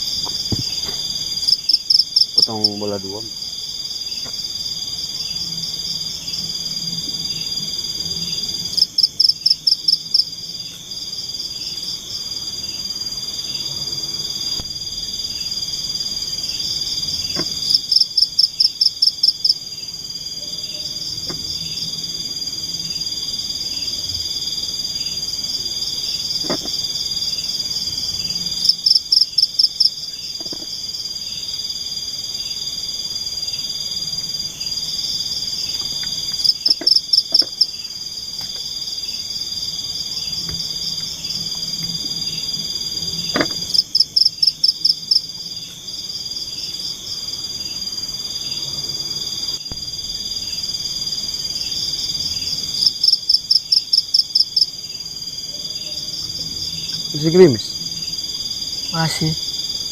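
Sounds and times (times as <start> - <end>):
insect ticking: 0.0 - 6.1, 14.4 - 48.5
insect calling in quick pulses: 0.0 - 6.4, 22.8 - 59.9
insects droning: 0.0 - 59.9.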